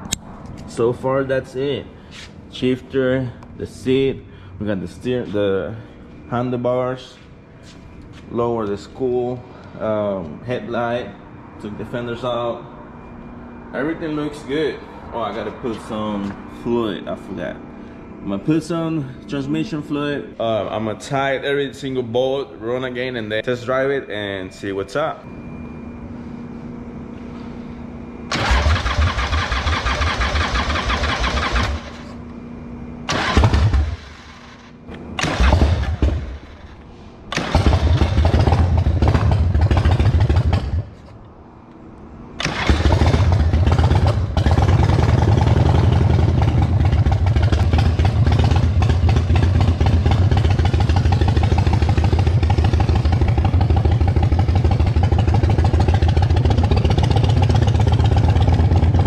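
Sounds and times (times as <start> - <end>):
motorcycle engine starting and dying: 28.3 - 32.2, 33.1 - 41.1, 42.4 - 59.0
motorcycle engine running: 37.4 - 41.0, 42.4 - 59.0.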